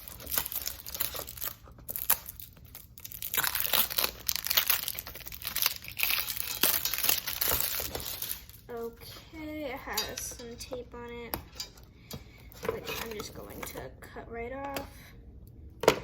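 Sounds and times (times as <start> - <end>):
packaging crinkling and rustling: 0.0 - 8.9.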